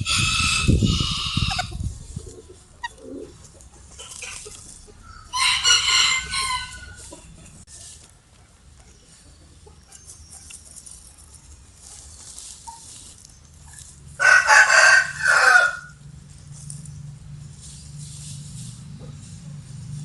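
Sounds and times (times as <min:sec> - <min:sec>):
rooster crowing: 0:00.0 - 0:01.7, 0:05.1 - 0:07.0, 0:14.2 - 0:16.0.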